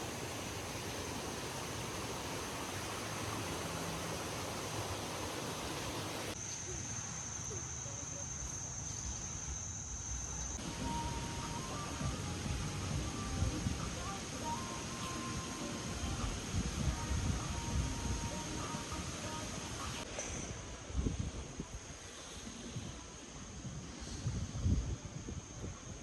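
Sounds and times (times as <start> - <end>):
steady rushing noise: 0.0 - 6.4.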